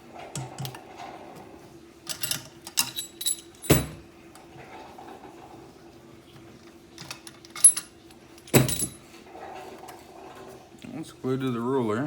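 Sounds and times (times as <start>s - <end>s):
metallic clinks and rattles: 2.1s - 4.0s, 7.2s - 7.9s, 8.5s - 9.0s.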